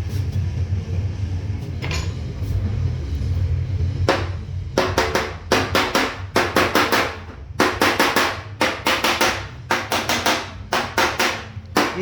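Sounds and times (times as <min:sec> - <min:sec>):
hammer striking steel: 0:04.1 - 0:12.0.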